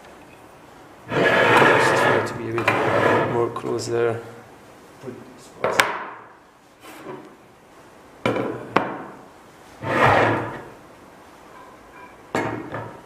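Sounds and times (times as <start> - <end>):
clunk and scrape on work surface: 1.1 - 3.4, 9.8 - 10.7.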